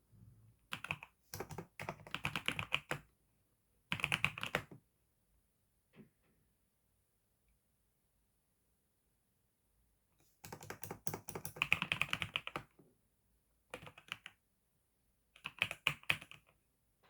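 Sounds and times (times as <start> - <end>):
rapid keyboard key clicks: 10.5 - 12.6.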